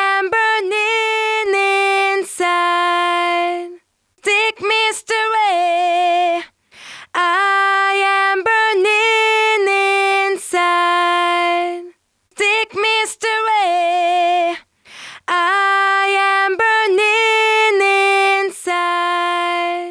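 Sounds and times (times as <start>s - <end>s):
woman singing a cappella: 0.0s - 19.9s
singer breathing in: 6.6s - 7.1s, 14.8s - 15.3s.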